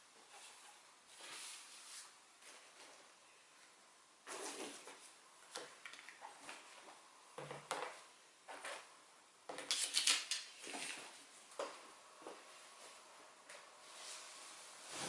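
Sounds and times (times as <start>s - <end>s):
brushing and scraping noises: 0.2s - 3.0s, 4.3s - 5.2s, 13.8s - 15.0s.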